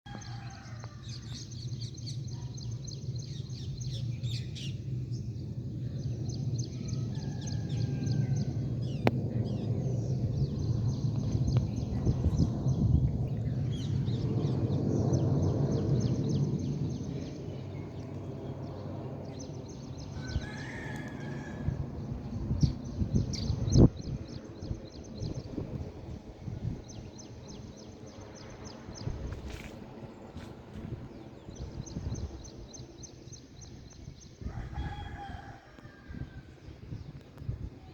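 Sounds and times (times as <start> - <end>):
jet engines rumbling: 0.1 - 37.9.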